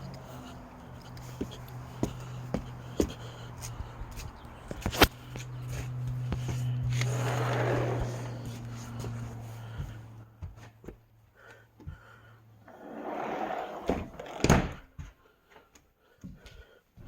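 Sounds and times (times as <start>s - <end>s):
door banging shut: 13.8s - 14.9s.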